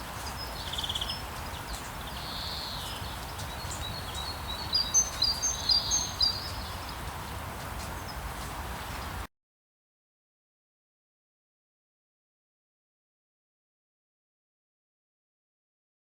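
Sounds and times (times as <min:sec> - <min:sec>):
songbirds singing: 0:00.0 - 0:09.2
steady rain: 0:00.0 - 0:09.3.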